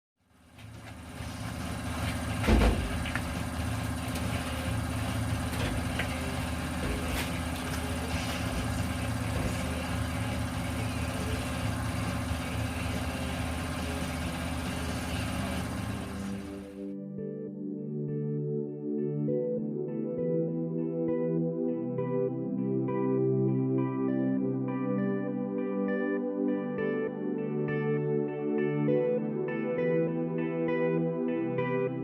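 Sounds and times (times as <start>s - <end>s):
motor humming: 0.6s - 16.8s
thump: 2.4s - 3.0s.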